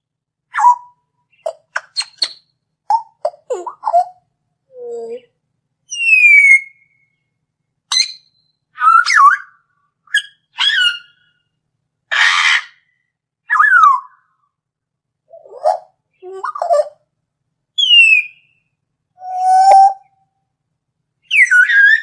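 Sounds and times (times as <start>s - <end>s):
bird whistles gliding down: 5.9s - 7.2s, 7.9s - 11.4s, 17.8s - 18.6s, 19.2s - 20.2s, 21.2s - 22.0s
noisy bird screech: 12.1s - 12.8s.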